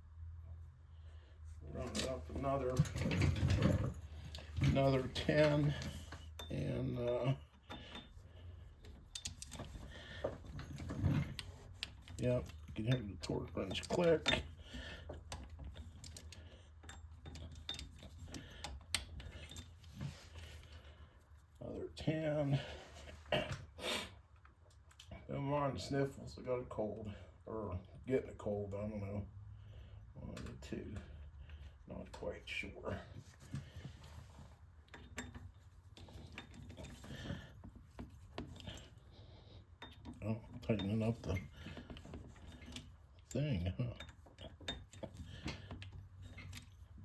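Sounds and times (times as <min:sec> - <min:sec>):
bolts ticking as tightened: 0:08.8 - 0:20.6.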